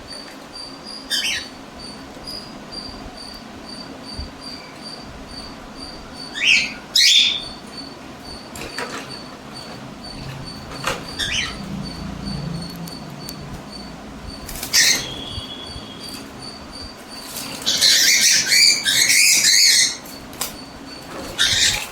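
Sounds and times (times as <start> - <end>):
cockatiels screeching: 1.0 - 1.6, 6.2 - 7.9, 8.6 - 12.0, 12.6 - 21.9
faint bird calls: 4.5 - 21.9.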